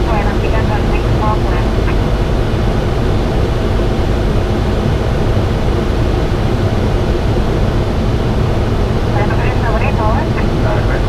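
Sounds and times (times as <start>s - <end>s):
aircraft engine noise: 0.0s - 11.0s.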